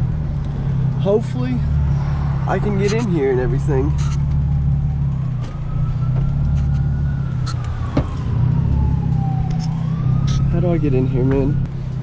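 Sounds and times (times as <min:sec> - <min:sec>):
car engine idling deep exhaust: 0:00.0 - 0:08.2
faint siren wail: 0:01.2 - 0:11.7.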